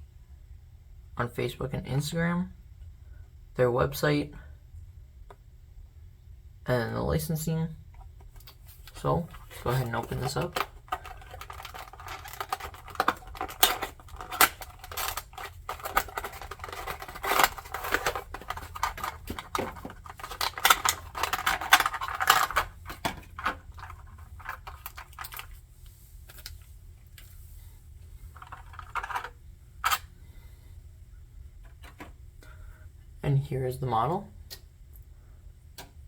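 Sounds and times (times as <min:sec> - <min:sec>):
cardboard box being unpacked: 0:09.3 - 0:25.4.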